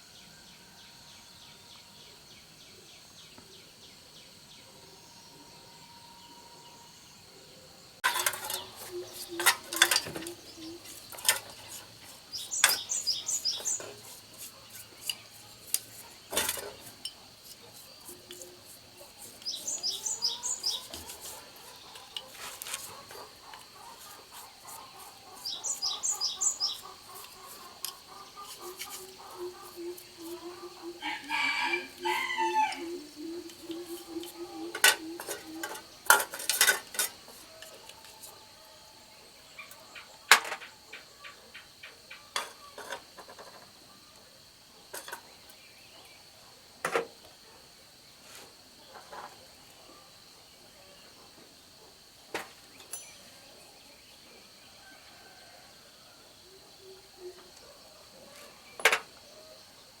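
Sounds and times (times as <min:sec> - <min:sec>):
rooster crowing: 0:28.2 - 0:34.8, 0:54.7 - 0:56.3.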